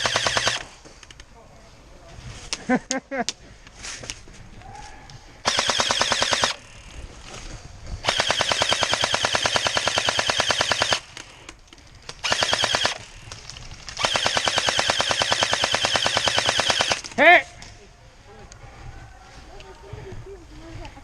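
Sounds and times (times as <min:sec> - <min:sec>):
airsoft gun firing full auto: 0:00.0 - 0:00.7, 0:05.4 - 0:06.6, 0:08.0 - 0:11.2, 0:12.2 - 0:13.0, 0:14.0 - 0:17.1.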